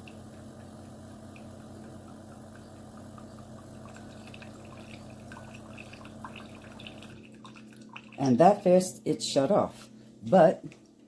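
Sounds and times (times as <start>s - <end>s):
water dripping into cup: 0.0s - 8.3s
coffee maker humming: 0.0s - 9.5s.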